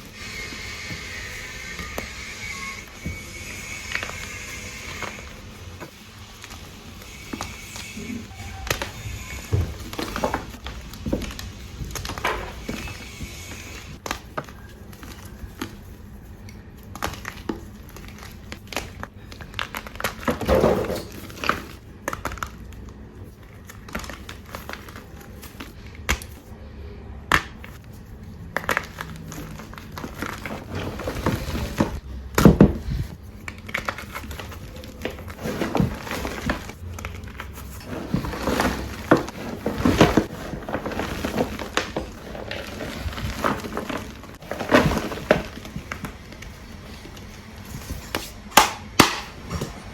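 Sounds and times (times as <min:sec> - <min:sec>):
construction noise: 0:00.0 - 0:05.9.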